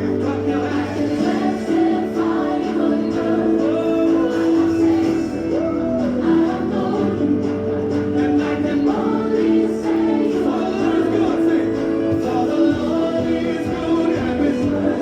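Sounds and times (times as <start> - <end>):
gospel choir singing: 0.0 - 15.0.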